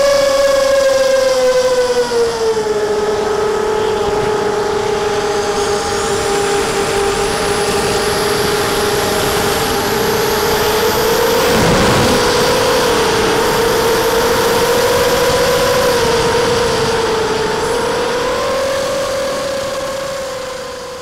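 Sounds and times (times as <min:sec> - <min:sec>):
drone propellers whining: 0:00.0 - 0:21.0.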